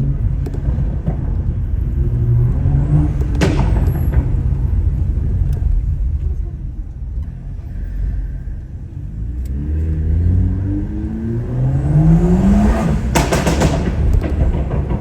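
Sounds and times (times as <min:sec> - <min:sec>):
car engine accelerating hard: 0:00.0 - 0:06.4, 0:07.2 - 0:15.0
exhaust pops and crackles: 0:00.0 - 0:07.8, 0:10.9 - 0:15.0.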